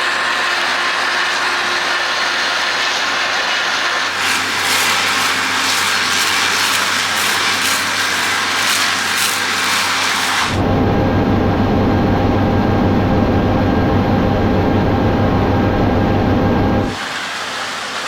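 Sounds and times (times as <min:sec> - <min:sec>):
rough hiss: 0:04.1 - 0:10.6.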